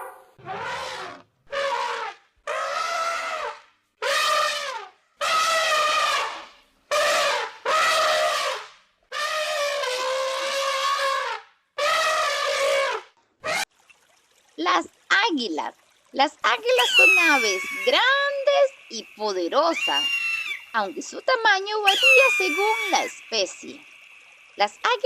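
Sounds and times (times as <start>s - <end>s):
elephant trumpeting: 0.0s - 13.7s, 16.8s - 18.6s, 19.6s - 20.9s, 21.8s - 23.5s.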